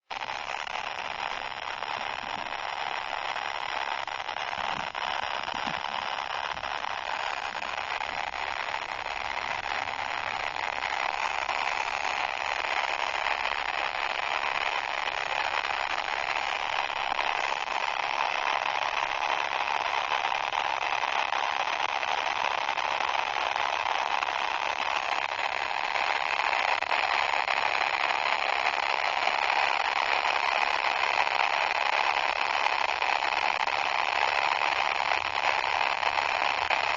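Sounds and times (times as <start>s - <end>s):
distorted fart sound effect: 0.1s - 18.2s.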